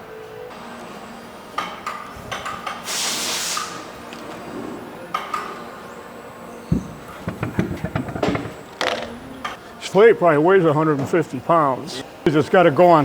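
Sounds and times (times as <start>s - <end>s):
short hiss: 2.8s - 3.9s.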